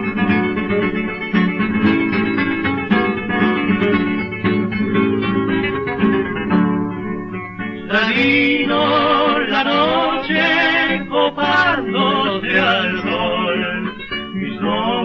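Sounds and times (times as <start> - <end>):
acoustic guitars playing: 0.0 - 15.0
male vocal duo singing: 7.8 - 15.0.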